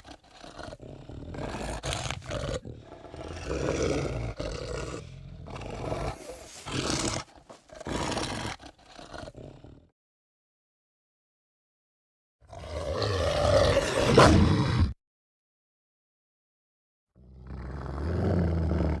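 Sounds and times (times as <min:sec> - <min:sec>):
werewolf roars and growls: 0:01.2 - 0:08.6.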